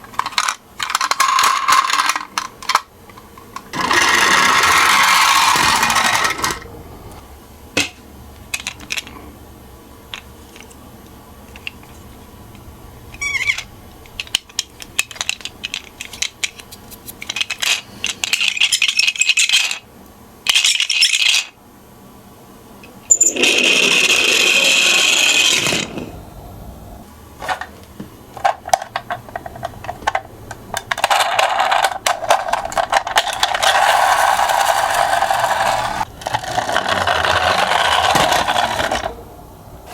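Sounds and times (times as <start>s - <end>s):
clicks and knocks of handling toys: 0.0s - 6.6s, 7.8s - 9.2s, 11.5s - 18.8s, 27.4s - 35.6s
toy cars rolling down a slope: 0.1s - 2.9s, 3.6s - 6.7s, 23.1s - 26.1s, 28.4s - 39.2s.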